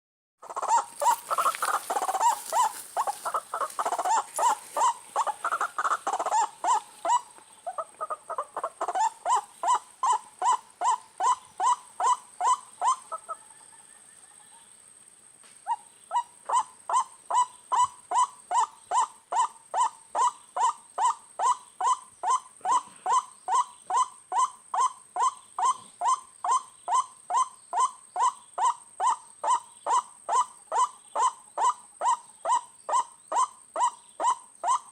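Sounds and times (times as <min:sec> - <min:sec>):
waterhen calling: 0:00.4 - 0:13.4.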